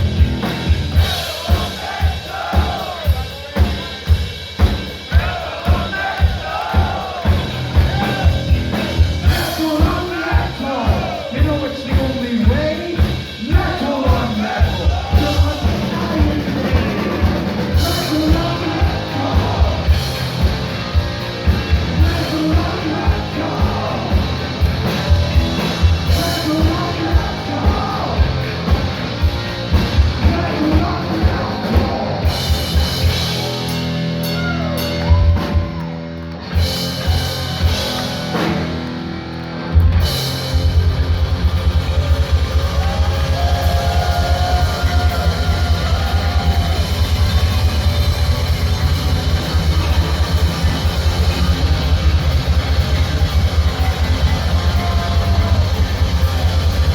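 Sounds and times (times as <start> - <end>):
heavy metal band playing live: 0.0 - 56.9
rapid bass drum beat: 0.0 - 56.9
sung vocals: 5.0 - 20.7, 21.8 - 28.9, 29.9 - 32.6.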